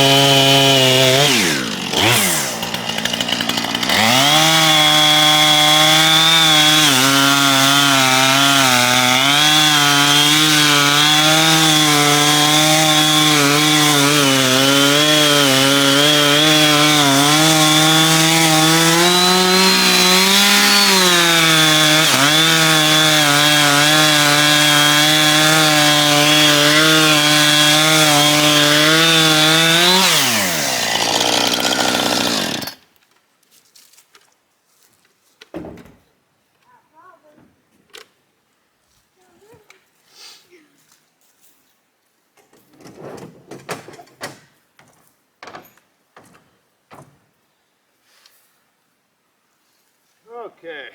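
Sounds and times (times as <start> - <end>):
chainsaw cutting log: 0.0 - 32.9.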